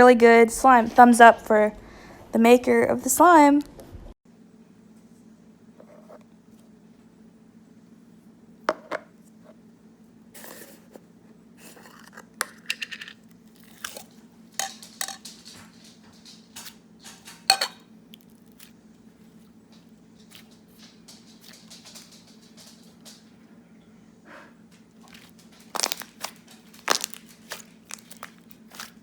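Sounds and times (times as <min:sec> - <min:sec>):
slime crackling and popping: 0:25.1 - 0:29.0.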